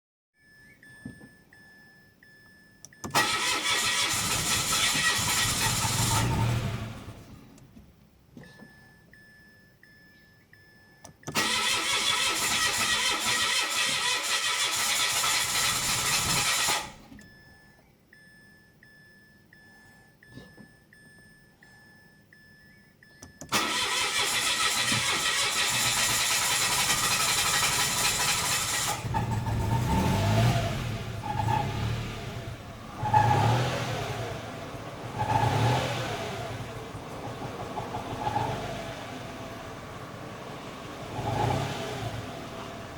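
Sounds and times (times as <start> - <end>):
car engine cranking: 2.9 - 7.8, 11.0 - 17.4, 23.2 - 42.9.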